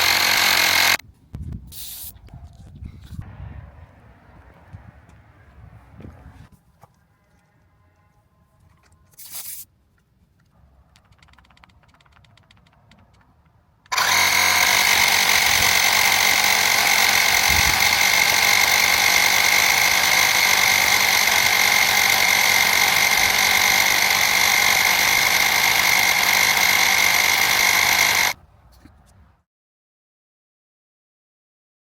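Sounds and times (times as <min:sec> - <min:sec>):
air compressor whining: 0:00.0 - 0:01.0, 0:13.9 - 0:28.4.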